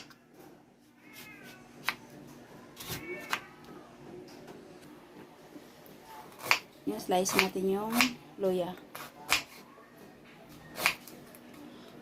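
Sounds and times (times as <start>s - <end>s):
cat meowing: 1.0s - 1.8s, 2.9s - 3.6s.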